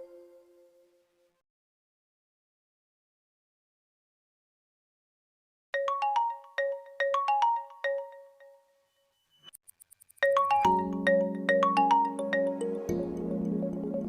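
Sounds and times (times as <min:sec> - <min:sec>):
bell-like mallet melody: 0:05.8 - 0:08.8, 0:10.2 - 0:13.8
tune with bass and chords: 0:10.4 - 0:14.0.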